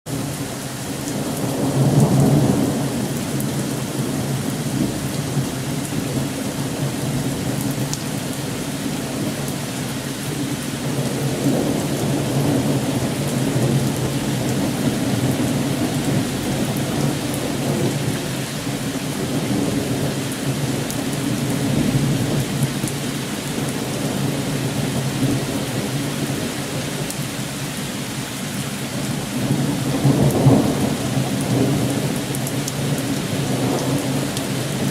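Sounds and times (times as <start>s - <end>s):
heavy rain pouring: 0.1s - 34.9s
rolling thunder rumbling: 10.3s - 27.0s, 28.9s - 34.9s.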